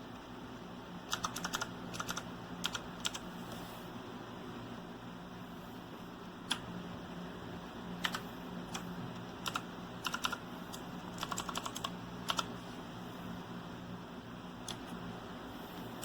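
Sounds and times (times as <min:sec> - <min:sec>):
clicky mechanical keyboard typing: 0:01.1 - 0:03.2, 0:08.0 - 0:08.8, 0:09.4 - 0:12.5, 0:14.6 - 0:14.9.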